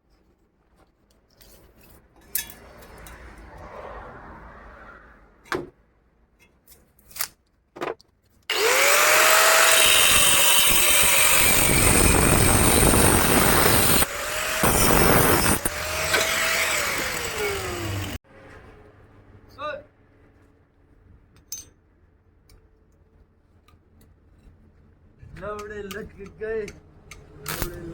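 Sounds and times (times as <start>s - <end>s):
power tool grinding: 8.5s - 18.2s.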